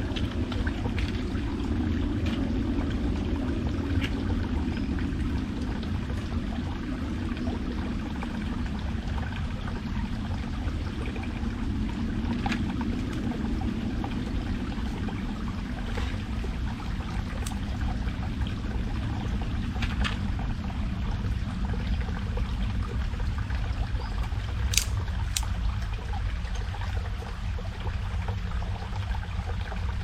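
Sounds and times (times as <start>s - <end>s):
forest stream running: 0.0s - 30.0s.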